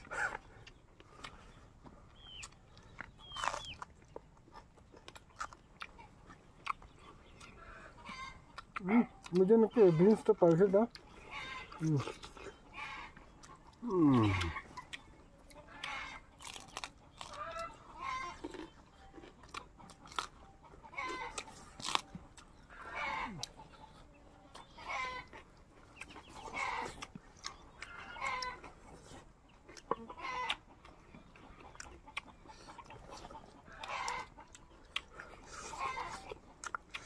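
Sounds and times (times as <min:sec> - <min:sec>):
chickens clucking: 0:00.0 - 0:37.0
crunchy chewing: 0:00.0 - 0:37.0.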